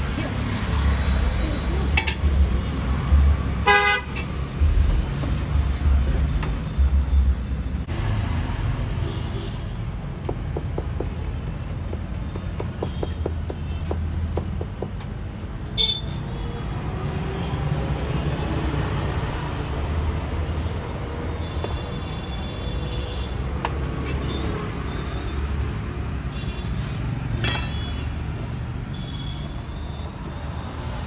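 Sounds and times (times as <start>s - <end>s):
traffic rumbling: 0.0s - 31.0s
car horn toot: 3.6s - 4.1s, 15.8s - 16.2s.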